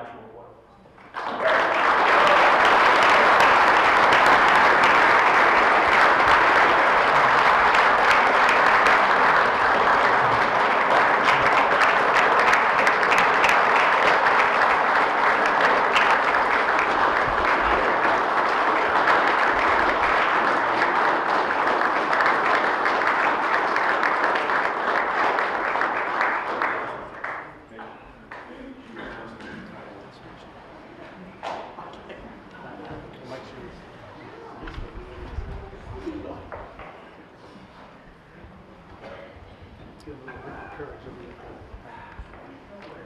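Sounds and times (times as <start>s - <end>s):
audience applauding: 1.0s - 28.6s.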